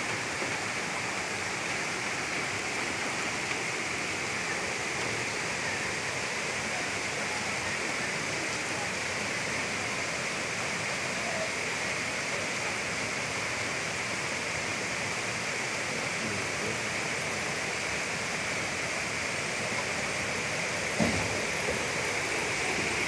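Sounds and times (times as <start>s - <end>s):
floodwater rushing: 0.0s - 23.0s.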